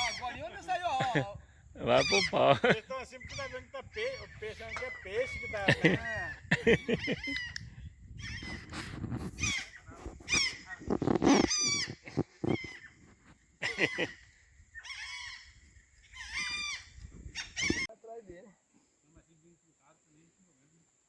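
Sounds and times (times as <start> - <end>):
harsh warbling animal cries: 10.3 - 12.8.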